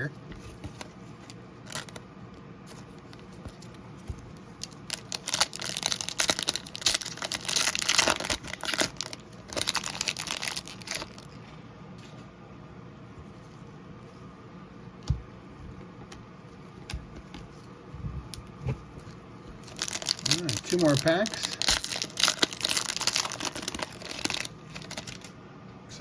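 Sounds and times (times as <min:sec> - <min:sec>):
card wrappers tearing and crinkling: 0:01.6 - 0:02.0, 0:03.1 - 0:11.4, 0:19.0 - 0:25.3.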